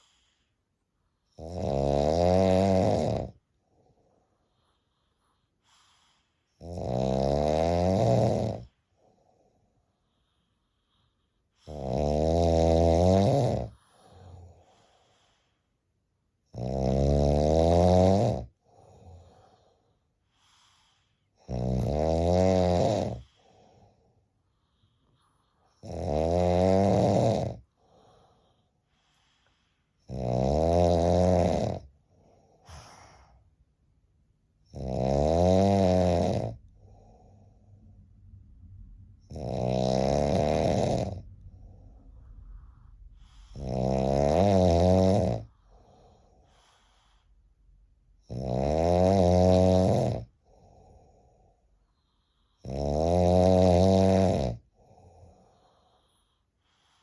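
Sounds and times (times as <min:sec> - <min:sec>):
faint breathing: 0:00.0 - 0:01.3, 0:03.4 - 0:06.7, 0:08.5 - 0:11.8, 0:13.5 - 0:16.4, 0:18.4 - 0:21.5, 0:22.9 - 0:25.9, 0:27.5 - 0:30.1, 0:31.8 - 0:34.7, 0:36.4 - 0:48.3, 0:50.2 - 0:52.9, 0:54.6 - 0:57.0
person snoring loudly: 0:01.4 - 0:03.4, 0:06.6 - 0:08.7, 0:11.6 - 0:13.7, 0:16.5 - 0:18.5, 0:21.4 - 0:23.3, 0:25.8 - 0:27.6, 0:30.0 - 0:31.9, 0:34.7 - 0:37.2, 0:39.2 - 0:41.3, 0:43.4 - 0:46.4, 0:48.2 - 0:51.0, 0:52.6 - 0:55.0.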